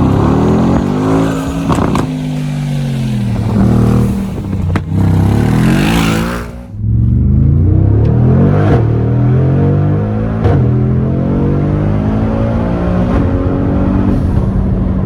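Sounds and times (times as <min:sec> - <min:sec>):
exhaust cracks: 0:00.0 - 0:09.1, 0:12.1 - 0:15.0
car engine revving: 0:00.0 - 0:15.0.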